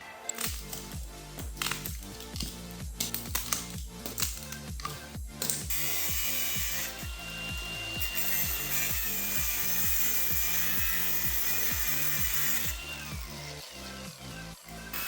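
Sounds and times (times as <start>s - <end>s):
background music with beat: 0.0s - 15.0s
angle grinder cutting metal: 3.4s - 15.0s.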